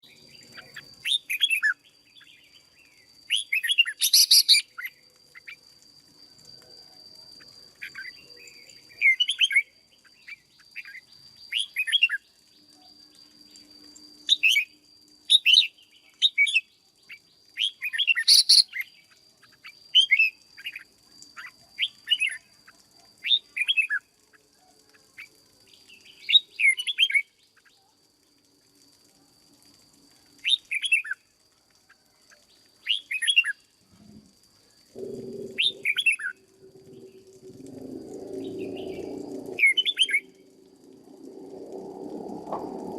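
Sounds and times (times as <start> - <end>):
bird singing whistled phrases: 0.0 - 5.6, 7.4 - 22.5, 23.2 - 24.1, 25.7 - 27.8, 30.4 - 31.2, 32.8 - 33.6, 35.5 - 37.4, 38.4 - 40.5.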